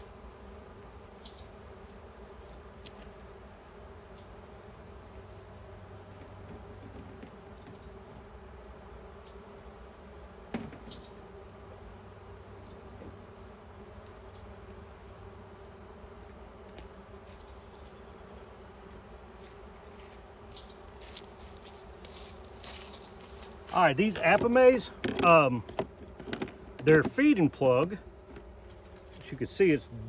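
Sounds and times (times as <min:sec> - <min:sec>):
bees buzzing: 0:00.0 - 0:30.0.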